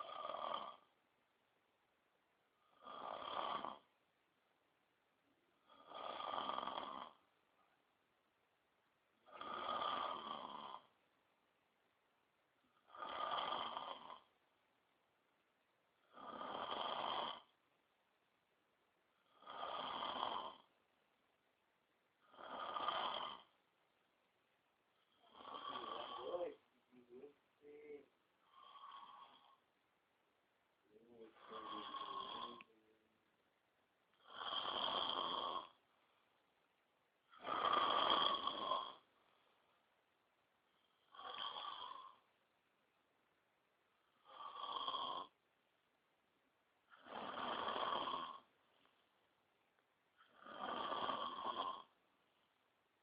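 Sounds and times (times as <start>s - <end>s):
man snoring: 0.0s - 0.9s, 2.6s - 3.9s, 5.6s - 7.3s, 9.2s - 11.0s, 12.8s - 14.3s, 16.0s - 17.5s, 19.2s - 20.7s, 22.2s - 23.6s, 25.1s - 29.6s, 30.9s - 32.9s, 34.2s - 35.8s, 37.3s - 39.1s, 41.0s - 42.2s, 44.1s - 45.4s, 46.9s - 48.5s, 50.2s - 52.0s.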